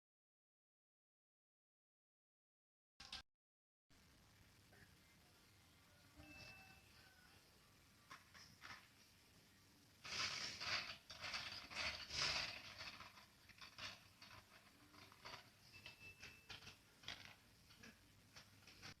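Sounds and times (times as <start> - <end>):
objects rustling and clicking: 8.0 - 9.2, 10.0 - 19.0.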